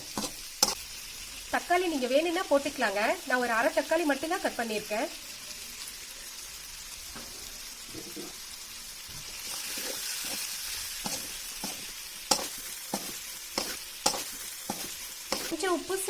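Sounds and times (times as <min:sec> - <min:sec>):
spatula scraping a pan: 0:00.0 - 0:00.9, 0:09.2 - 0:15.8
food sizzling in oil: 0:00.0 - 0:16.0.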